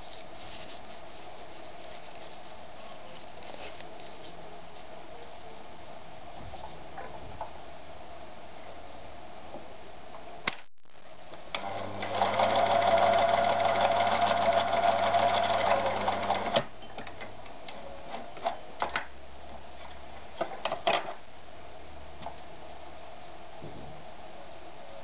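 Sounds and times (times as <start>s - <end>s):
sewing machine stitching: 11.6s - 16.7s.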